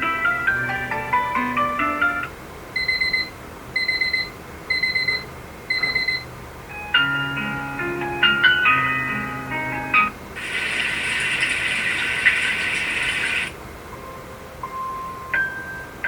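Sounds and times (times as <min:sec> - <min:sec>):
alarm clock beeps: 0:02.8 - 0:06.2.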